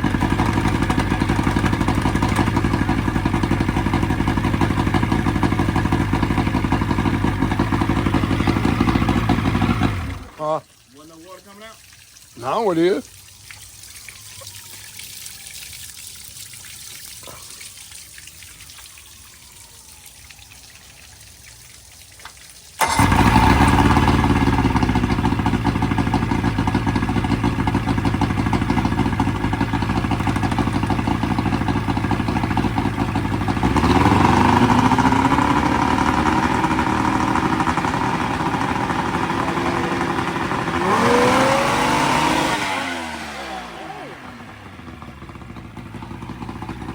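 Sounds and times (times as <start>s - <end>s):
outboard boat motor running: 0.0s - 10.4s, 22.8s - 46.9s.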